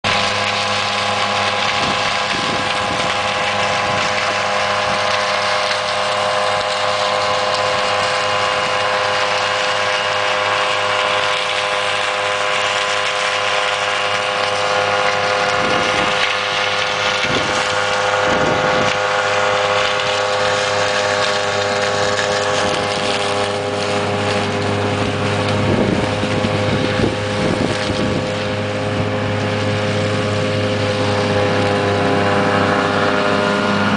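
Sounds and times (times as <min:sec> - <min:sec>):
harvester engine and machinery whine: 0:00.0 - 0:33.9.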